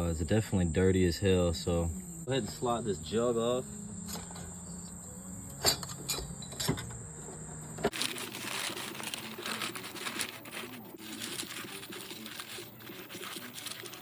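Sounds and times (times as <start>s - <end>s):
faint low calls: 0.0s - 7.9s.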